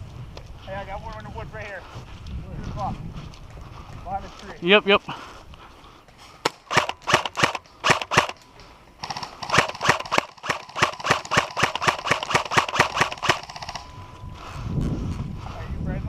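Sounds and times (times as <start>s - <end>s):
airsoft guns firing: 6.4s - 8.4s, 9.0s - 13.9s.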